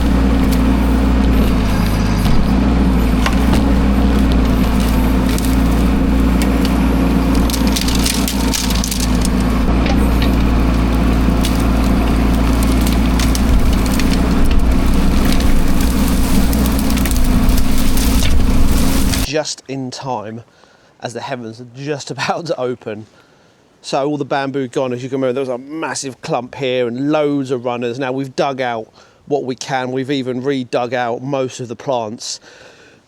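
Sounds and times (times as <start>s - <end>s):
engine running: 0.0s - 19.3s
wood cracking and snapping: 0.0s - 19.3s.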